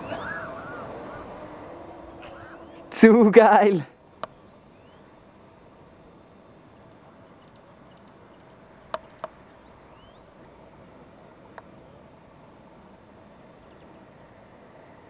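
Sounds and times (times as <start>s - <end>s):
faint bird chirps: 0.0s - 3.0s, 4.2s - 5.5s, 6.6s - 12.7s.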